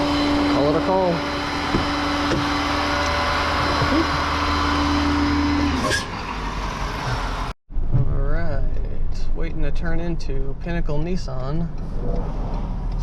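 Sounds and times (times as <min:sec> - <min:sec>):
truck engine droning: 0:00.0 - 0:07.6.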